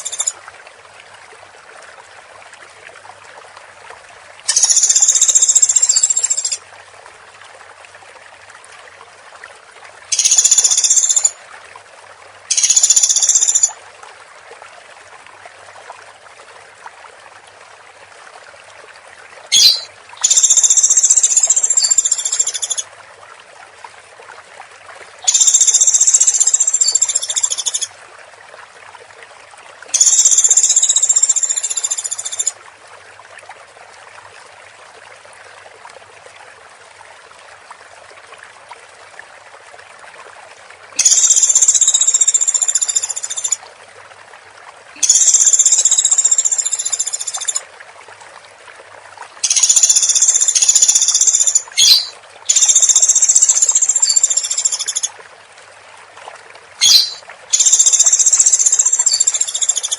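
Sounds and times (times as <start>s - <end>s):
woodpecker trilled calls: 19.5s - 22.8s, 49.4s - 55.1s, 56.8s - 59.9s.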